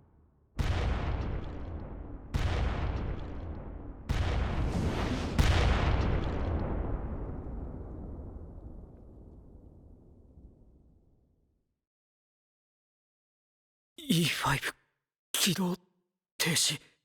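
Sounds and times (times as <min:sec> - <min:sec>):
explosion booms with rumble: 0:00.6 - 0:11.2.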